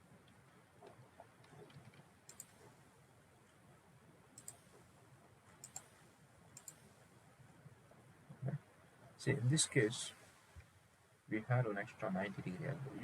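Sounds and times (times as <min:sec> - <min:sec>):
computer mouse clicks: 0:00.2 - 0:02.8, 0:04.4 - 0:04.9, 0:05.6 - 0:07.0.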